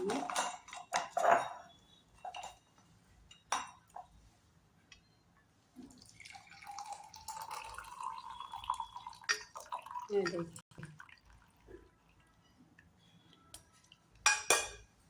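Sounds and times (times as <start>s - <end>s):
liquid trickling into a glass: 5.9s - 12.3s.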